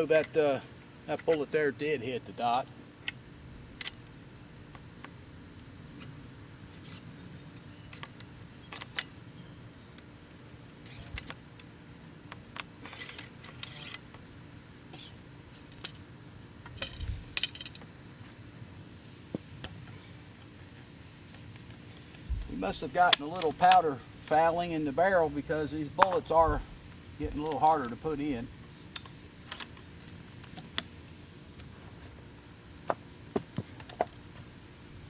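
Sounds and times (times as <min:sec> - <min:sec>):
metal gear clicking and clinking: 0:15.0 - 0:16.1, 0:16.8 - 0:17.8.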